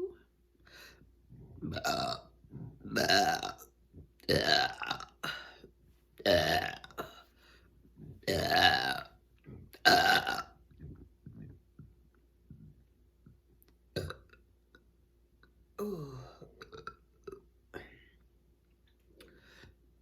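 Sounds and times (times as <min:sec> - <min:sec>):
woman burping loudly: 0:01.6 - 0:05.6, 0:06.2 - 0:07.2, 0:08.2 - 0:11.0, 0:14.0 - 0:14.4, 0:15.8 - 0:17.4.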